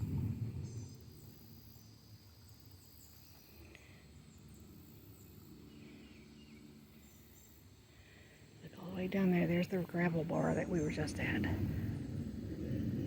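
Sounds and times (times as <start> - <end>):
low rumble: 0.0 - 1.6, 9.0 - 13.0
small birds chirping: 0.0 - 12.4.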